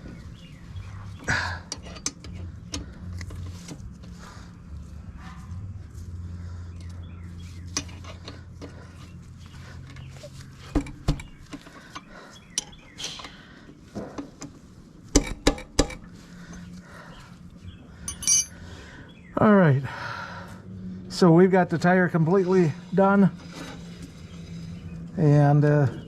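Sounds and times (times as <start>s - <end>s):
hand tools clinking on metal: 18.0s - 18.6s.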